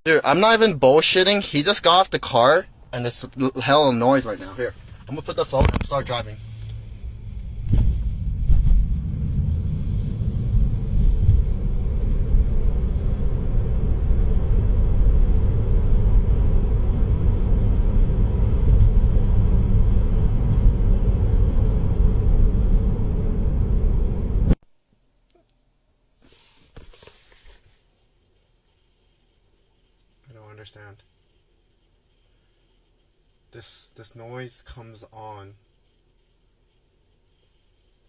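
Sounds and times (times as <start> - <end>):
faint high hiss: 0.0 - 16.7, 24.6 - 38.0
road and tyre rumble: 2.6 - 24.6.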